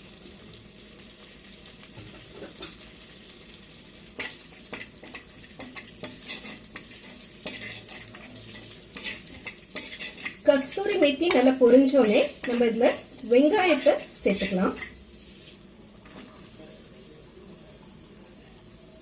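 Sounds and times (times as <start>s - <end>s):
leaves sizzling in butter: 0.0s - 19.0s
spoon scraping metal pot: 4.2s - 15.0s.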